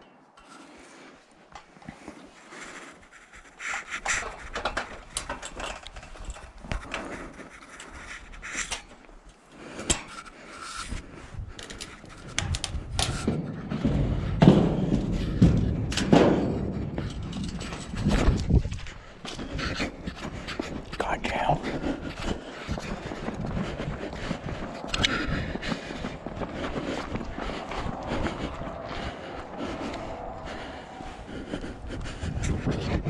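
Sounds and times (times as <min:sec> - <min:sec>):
footsteps: 0:00.4 - 0:33.0
knocks and thuds: 0:13.2 - 0:17.2
low rumble: 0:21.6 - 0:33.0.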